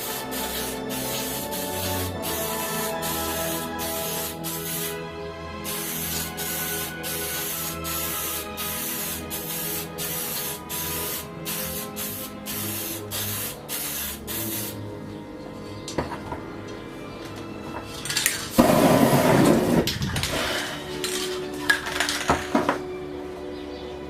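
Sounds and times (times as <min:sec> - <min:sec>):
spray paint can hissing: 0:00.0 - 0:05.0, 0:05.6 - 0:14.8
background music: 0:00.0 - 0:24.0.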